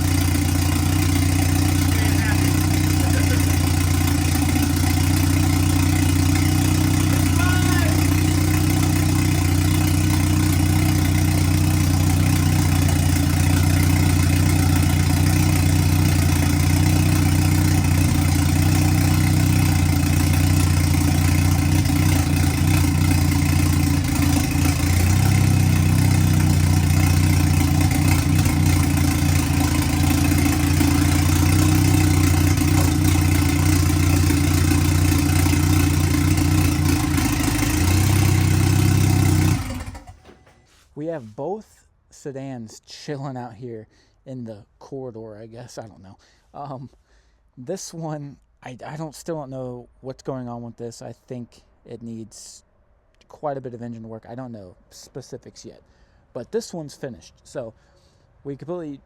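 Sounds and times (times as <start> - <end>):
car engine idling: 0.0 - 40.6.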